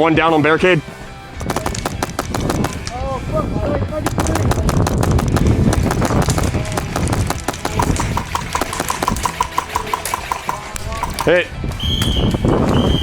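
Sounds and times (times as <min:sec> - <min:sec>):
airsoft guns firing: 0:01.4 - 0:11.4
short high-pitched pips: 0:04.1 - 0:11.4.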